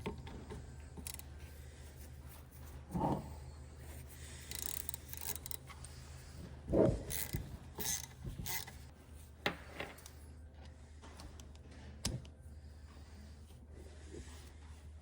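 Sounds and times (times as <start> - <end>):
metal parts clinking and scraping: 4.4 - 5.7, 7.0 - 8.8.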